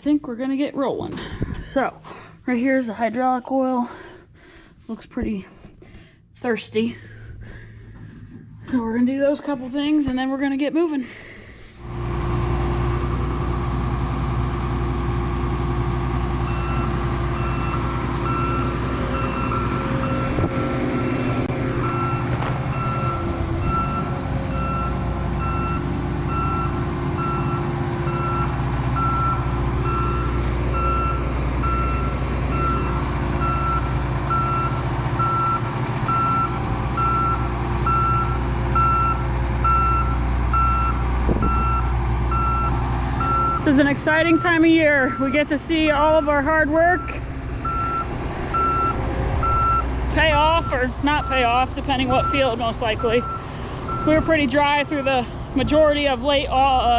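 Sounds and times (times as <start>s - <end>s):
diesel engine running: 0.0s - 56.9s
reversing alarm beeping: 16.4s - 55.3s.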